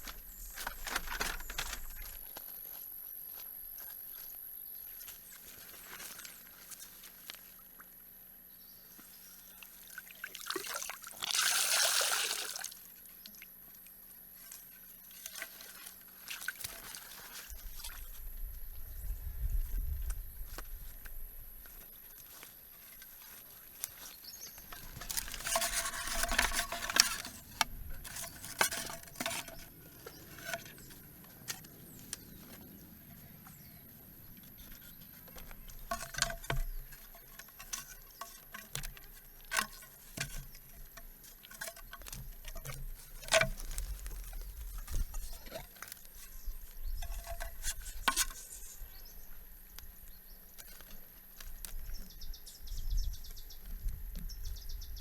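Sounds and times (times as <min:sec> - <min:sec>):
objects being handled: 0:00.0 - 0:02.8, 0:20.0 - 0:52.6.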